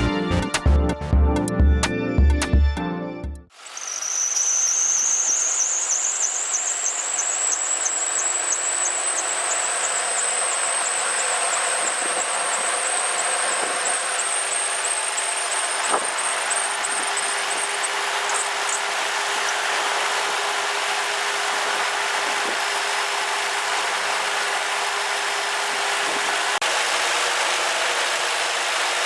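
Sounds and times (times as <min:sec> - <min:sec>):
drive belt squealing: 0:03.6 - 0:26.6
engine running hum: 0:03.6 - 0:29.0.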